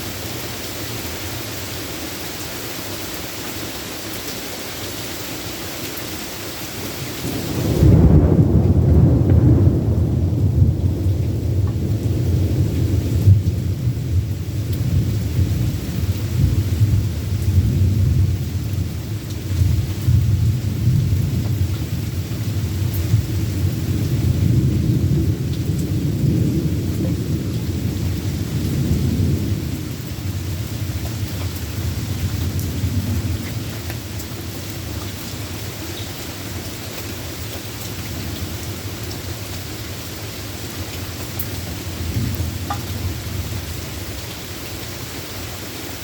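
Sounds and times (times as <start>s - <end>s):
steady rain: 0.0s - 46.0s
thunder rumbling: 7.2s - 35.0s, 41.2s - 44.8s.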